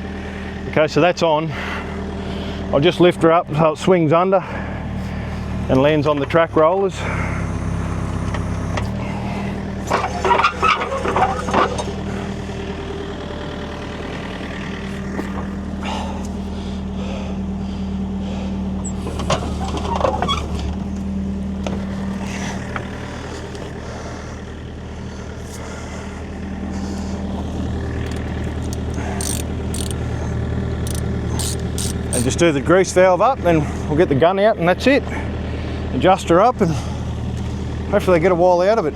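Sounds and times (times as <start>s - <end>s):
excavator diesel engine running: 0.0s - 38.9s
metal clanks and knocks: 9.9s - 12.1s.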